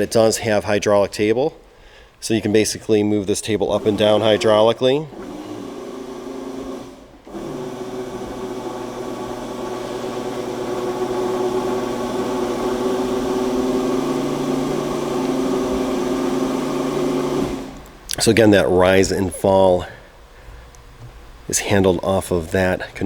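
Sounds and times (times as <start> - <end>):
hydraulic pump humming: 3.4 - 18.4.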